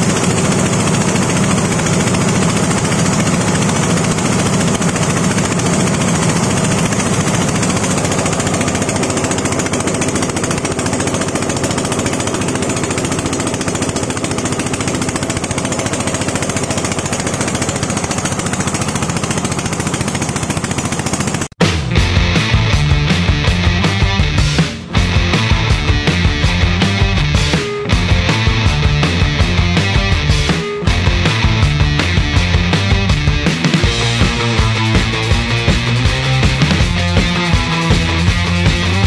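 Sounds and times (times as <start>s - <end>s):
grinding machine clattering: 0.0s - 21.6s, 22.4s - 39.0s.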